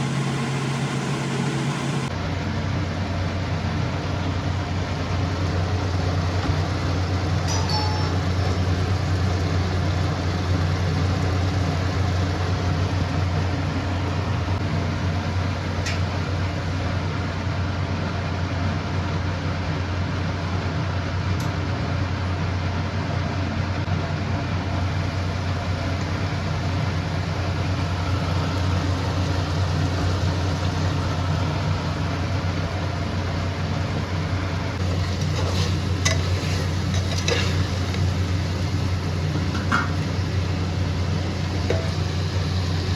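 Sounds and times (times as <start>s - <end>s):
low mechanical hum: 0.0s - 42.9s
curry sizzling in a pan: 27.6s - 31.6s, 34.8s - 42.9s
utensil clinking against pot: 34.8s - 38.3s, 39.3s - 40.2s, 41.6s - 42.1s.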